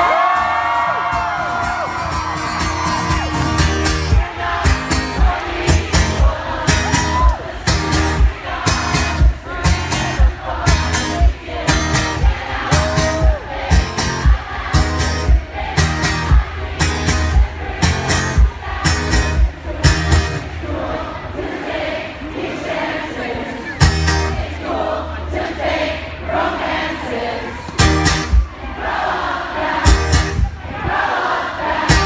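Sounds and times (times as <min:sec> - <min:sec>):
voices whooping and shouting: 0:00.0 - 0:03.8, 0:06.8 - 0:07.5.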